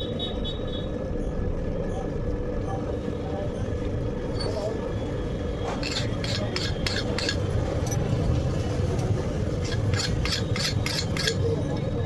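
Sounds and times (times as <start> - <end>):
hammer striking metal: 5.8 - 7.4, 9.6 - 11.4.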